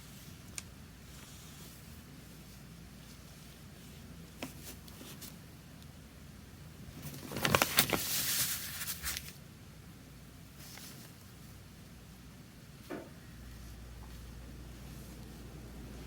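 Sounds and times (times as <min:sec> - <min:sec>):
paper rustling scrape: 0:07.0 - 0:09.4.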